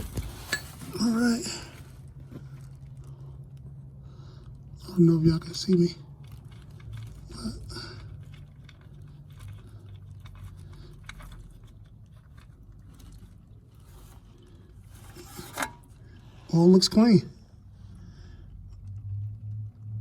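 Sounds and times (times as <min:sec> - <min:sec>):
tools clicking and scraping: 0:00.0 - 0:01.1, 0:08.3 - 0:16.1.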